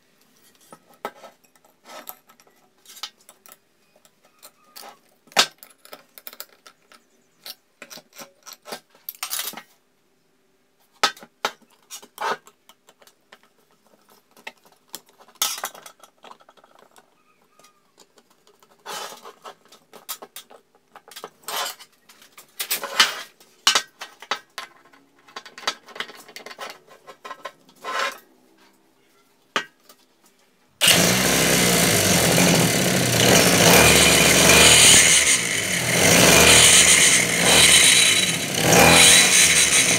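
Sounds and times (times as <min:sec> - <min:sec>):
two-stroke engine running loudly: 0:30.8 - 0:39.9.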